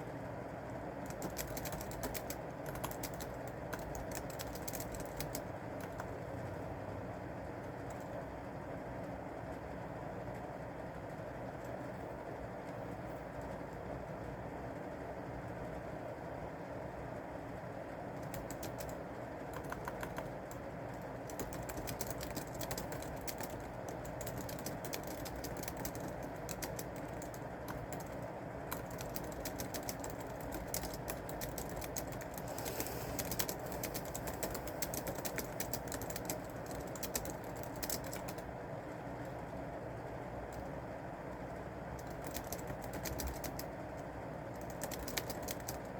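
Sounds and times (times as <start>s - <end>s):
keyboard key clicks: 1.1s - 6.1s, 21.3s - 38.4s, 42.0s - 43.7s, 44.5s - 45.8s.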